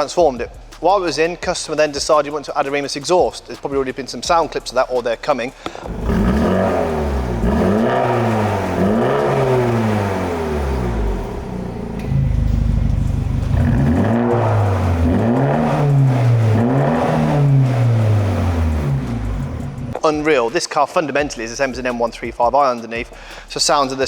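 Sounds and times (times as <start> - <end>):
car engine revving: 5.7 - 20.0.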